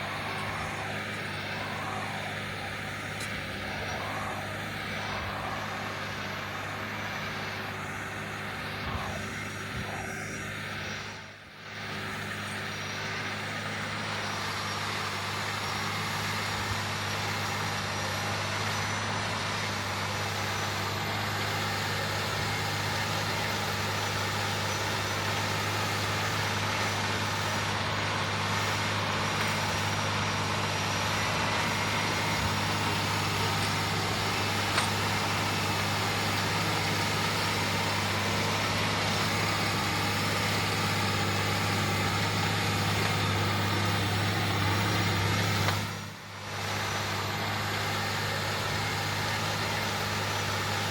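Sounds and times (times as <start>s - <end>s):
tractor diesel engine under load: 0.0s - 50.9s.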